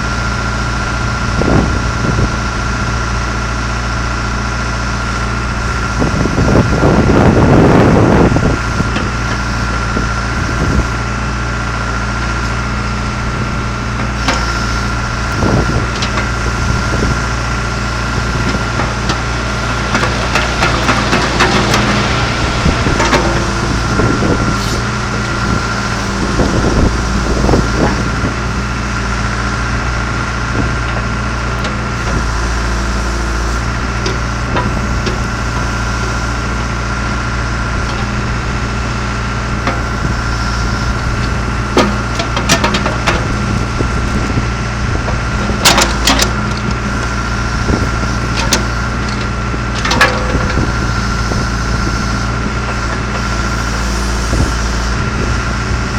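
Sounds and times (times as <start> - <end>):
diesel engine running with whine: 0.0 - 55.9
sharp knocks and clanks: 18.2 - 24.8, 41.7 - 43.4, 47.7 - 50.7.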